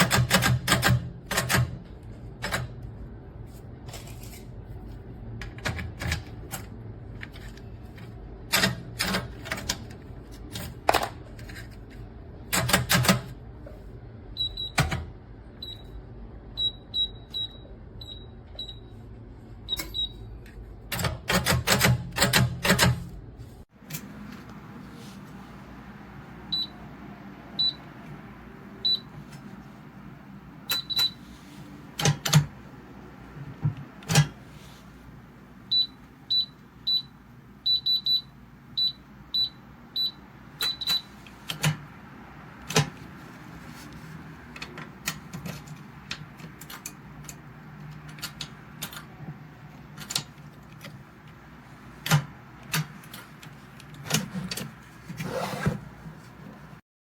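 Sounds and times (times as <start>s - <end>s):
keypad safe beeping: 14.3s - 19.0s, 19.6s - 23.0s, 26.5s - 26.8s, 27.6s - 27.9s, 28.8s - 29.1s, 30.7s - 31.3s, 35.7s - 41.2s.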